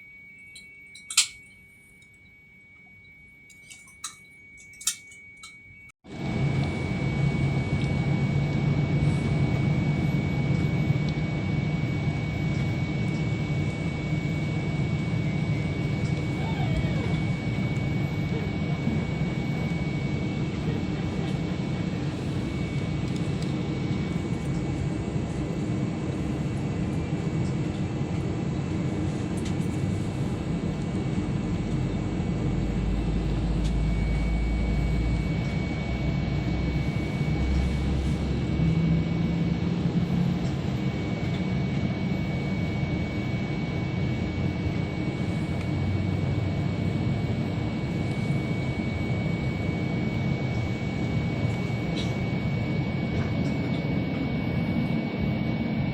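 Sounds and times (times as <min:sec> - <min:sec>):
thin high steady tone: 0:00.0 - 0:05.9.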